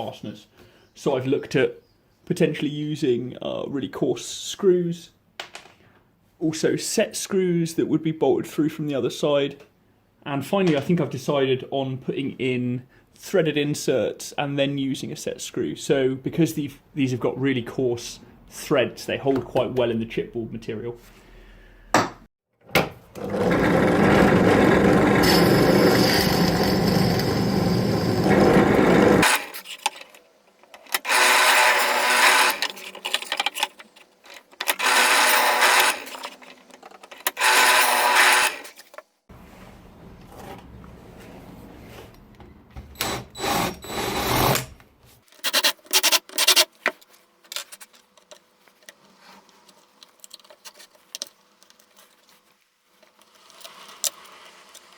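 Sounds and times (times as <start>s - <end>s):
power drill drilling: 23.2s - 29.7s, 31.0s - 33.9s, 34.6s - 36.6s, 37.2s - 38.8s.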